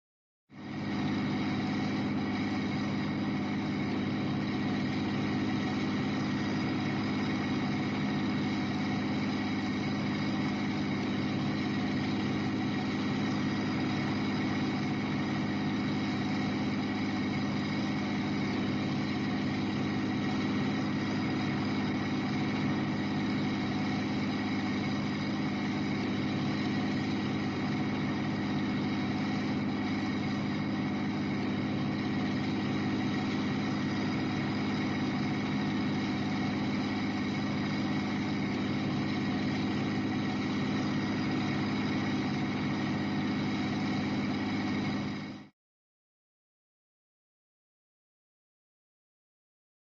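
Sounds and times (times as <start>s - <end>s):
vehicle engine hum: 0.5s - 45.5s.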